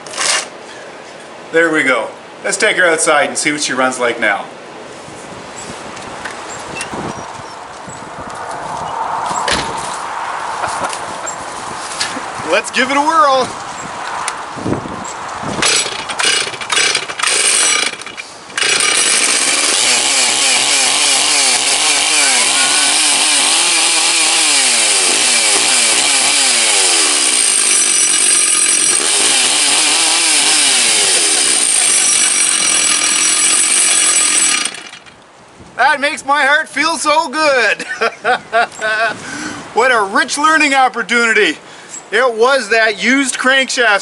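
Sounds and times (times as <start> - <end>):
chainsaw engine revving: 15.6 - 35.2
chainsaw starter pulls: 15.6 - 35.2.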